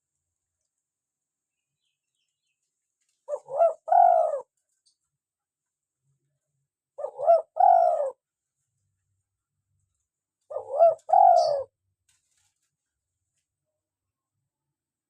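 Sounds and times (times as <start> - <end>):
dove cooing: 3.3 - 4.5, 7.0 - 8.2, 10.5 - 11.7.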